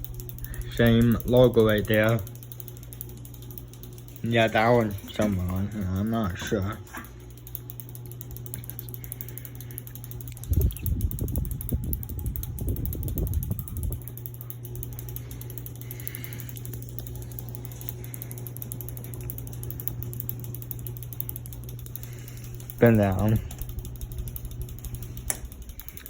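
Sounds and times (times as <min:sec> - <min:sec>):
low rumbling buffets: 0:00.0 - 0:02.4, 0:10.1 - 0:18.1, 0:19.1 - 0:26.0
ceiling fan motor hum: 0:00.0 - 0:26.0.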